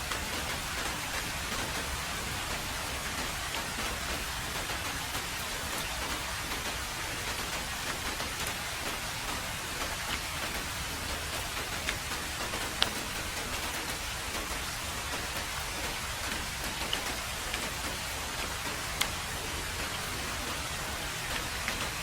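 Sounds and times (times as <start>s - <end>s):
heavy rain on a road: 0.0s - 22.0s.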